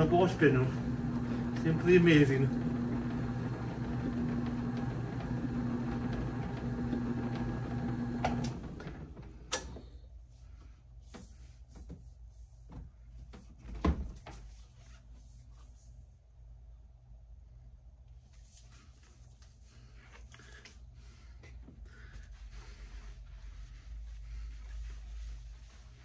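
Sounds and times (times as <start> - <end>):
motor humming: 0.0 - 9.6.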